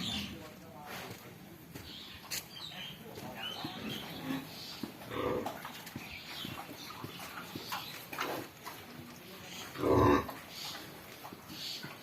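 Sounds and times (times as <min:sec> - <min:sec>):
pigs squealing and grunting: 0:09.7 - 0:10.4.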